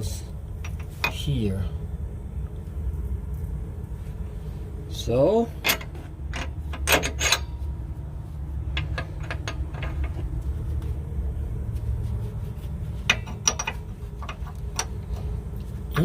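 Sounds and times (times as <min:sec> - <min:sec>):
low engine-like rumble: 0:00.0 - 0:16.0
metallic clicks of tools and bolts: 0:05.6 - 0:07.6, 0:08.7 - 0:10.3, 0:13.1 - 0:15.2.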